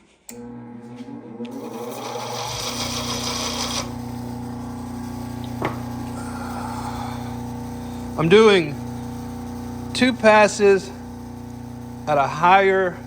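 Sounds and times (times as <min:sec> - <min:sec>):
motor humming: 0:00.3 - 0:13.0
compound scraping spinning wheel: 0:01.5 - 0:04.3.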